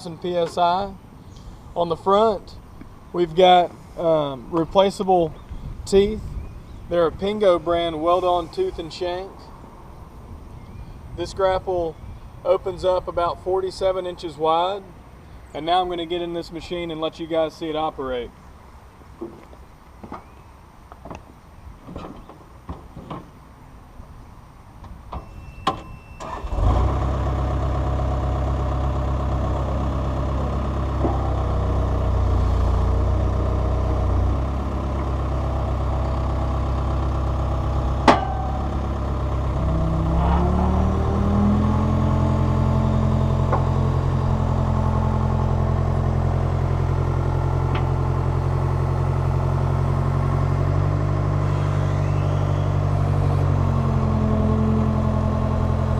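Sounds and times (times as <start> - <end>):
diesel engine running: 26.2 - 55.9.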